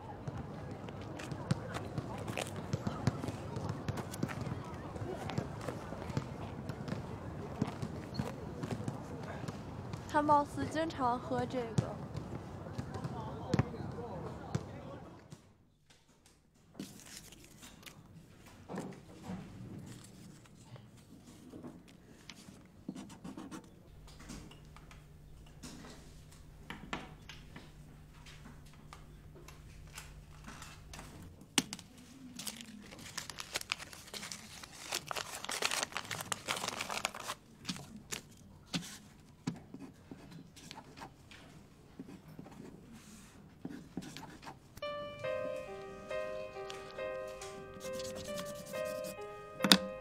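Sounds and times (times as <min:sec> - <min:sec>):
paper or plastic crinkling: 0:16.8 - 0:18.0, 0:31.7 - 0:39.0, 0:47.7 - 0:49.2.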